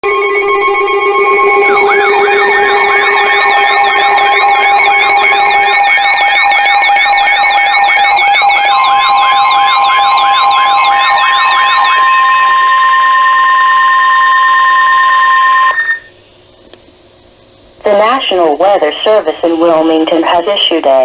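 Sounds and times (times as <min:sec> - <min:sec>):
warbling siren sweep: 0:00.0 - 0:16.2
steady alarm tone: 0:00.0 - 0:16.5
steady electronic tones: 0:00.0 - 0:16.6.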